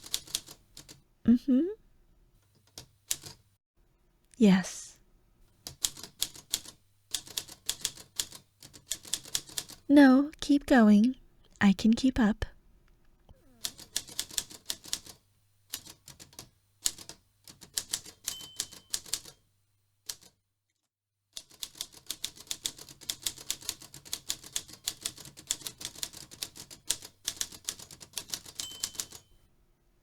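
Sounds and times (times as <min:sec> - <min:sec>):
typewriter typing: 0:00.0 - 0:01.0, 0:02.6 - 0:03.4, 0:05.6 - 0:09.9, 0:13.6 - 0:19.4, 0:20.1 - 0:20.3, 0:21.4 - 0:29.3.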